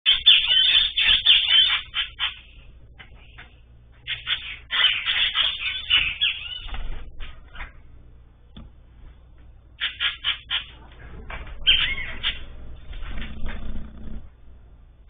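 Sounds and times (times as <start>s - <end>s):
birds calling harshly: 0.1s - 7.8s, 9.8s - 12.6s.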